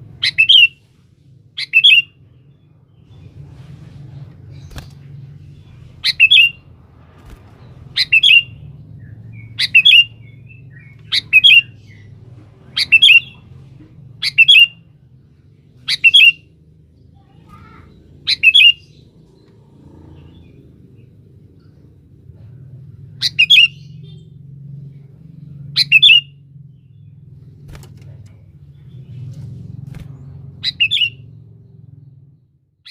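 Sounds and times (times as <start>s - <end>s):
bird calling: 0.2s - 0.8s, 1.6s - 2.1s, 5.6s - 6.7s, 8.0s - 13.5s, 14.2s - 14.8s, 15.8s - 16.4s, 17.5s - 19.0s, 25.8s - 26.3s, 30.6s - 31.3s.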